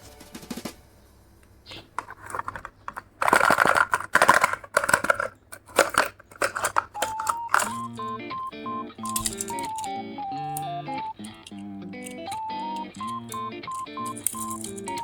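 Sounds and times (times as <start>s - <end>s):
light background music: 0.0s - 1.0s, 7.0s - 15.0s
packaging rustling and clicks: 2.0s - 8.2s, 9.0s - 15.0s.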